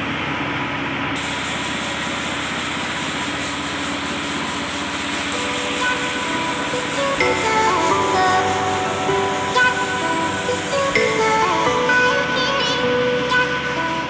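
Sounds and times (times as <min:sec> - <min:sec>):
machine running: 0:01.2 - 0:14.0
faint musical tones: 0:05.3 - 0:14.0.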